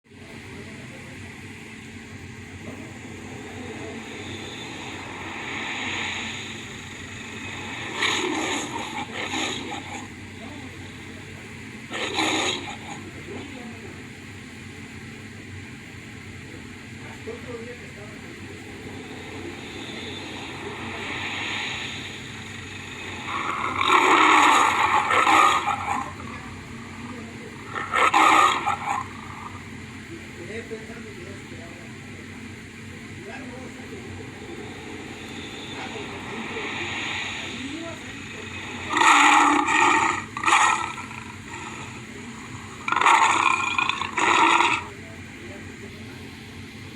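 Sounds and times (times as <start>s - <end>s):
lion roar sound effect: 2.6s - 13.6s, 18.3s - 30.2s, 33.3s - 45.1s
steady rushing noise: 2.8s - 13.1s, 18.0s - 30.1s, 33.1s - 45.0s.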